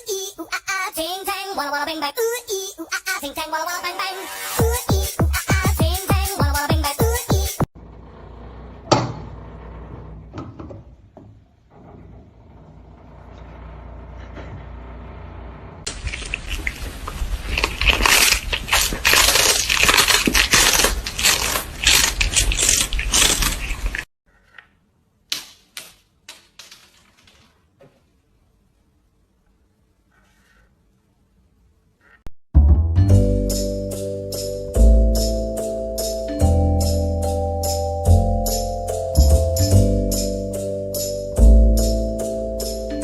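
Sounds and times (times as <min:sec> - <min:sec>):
crunching and crackling: 0:15.9 - 0:24.1, 0:25.3 - 0:28.0.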